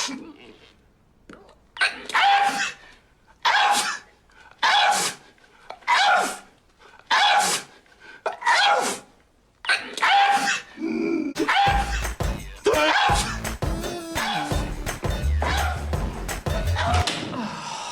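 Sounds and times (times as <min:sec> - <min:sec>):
man sneezing: 0:01.8 - 0:02.9, 0:03.5 - 0:05.3, 0:05.9 - 0:06.5, 0:07.1 - 0:07.8, 0:08.4 - 0:09.1.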